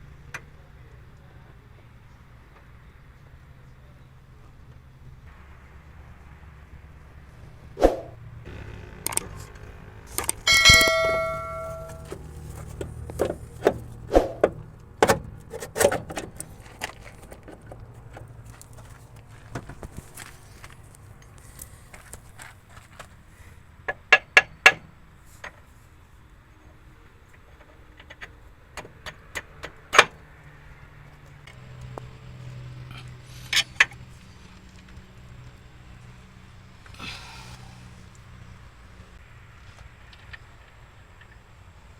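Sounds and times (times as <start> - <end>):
low steady hum: 5.2 - 14.1
metal tools knocking and clanking: 10.2 - 13.8
loud ringing metal clang: 10.4 - 12.2.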